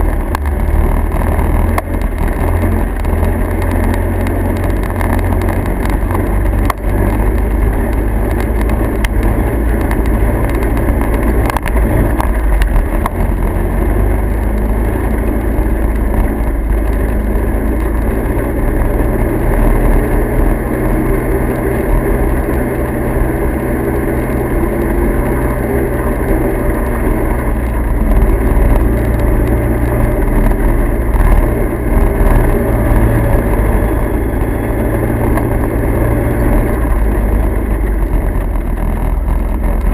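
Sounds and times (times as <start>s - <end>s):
vehicle engine drone: 0.0s - 39.9s.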